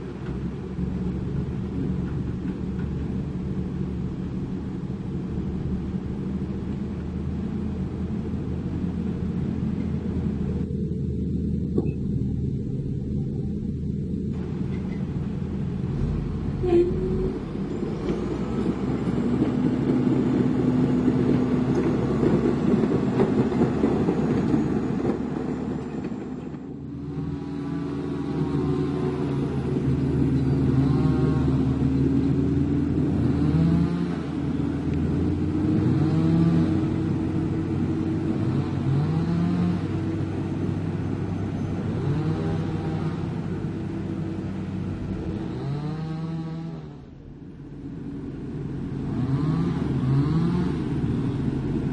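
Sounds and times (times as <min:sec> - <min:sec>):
heavy diesel engine running: 0:00.0 - 0:51.9.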